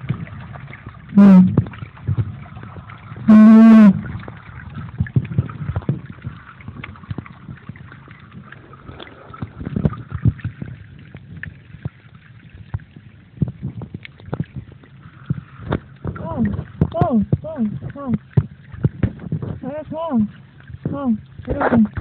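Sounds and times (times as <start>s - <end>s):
rush of moving water: 0.0s - 22.0s
brief humming tone: 1.2s - 1.6s, 3.3s - 4.1s
muffled underwater knocking: 1.2s - 2.3s, 3.3s - 4.1s, 15.7s - 19.6s.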